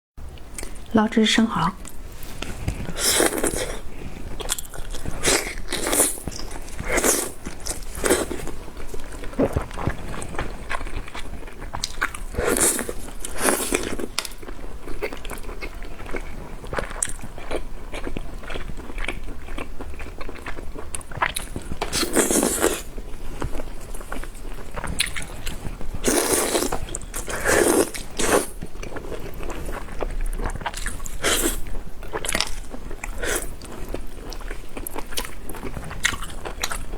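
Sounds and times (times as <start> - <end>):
person biting and chewing: 2.7 - 15.7, 20.2 - 22.9, 24.1 - 33.6.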